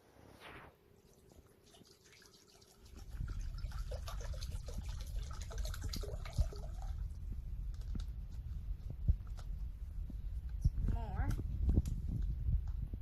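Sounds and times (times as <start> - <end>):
water trickling into container: 1.0 - 7.8
low water rumbling: 2.9 - 8.2.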